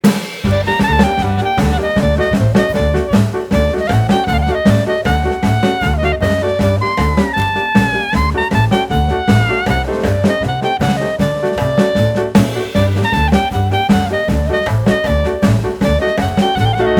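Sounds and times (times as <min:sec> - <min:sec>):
upbeat swing jazz music: 0:00.0 - 0:16.9.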